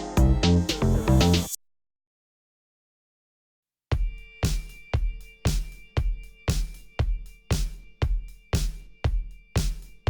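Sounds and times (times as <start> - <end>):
electronic music with beat: 0.0 - 1.6, 3.9 - 10.0.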